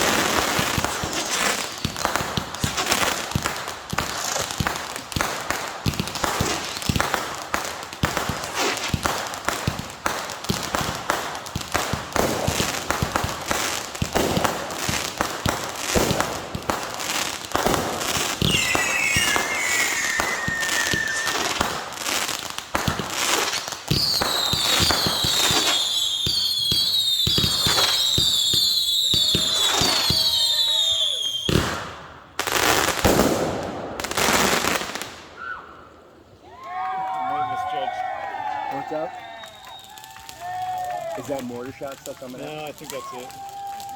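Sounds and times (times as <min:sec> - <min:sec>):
fireworks falling whistles: 0:00.0 - 0:07.3, 0:08.0 - 0:11.0, 0:11.7 - 0:36.0, 0:38.8 - 0:43.9
fireworks crackling and banging: 0:00.0 - 0:35.5, 0:36.2 - 0:43.9.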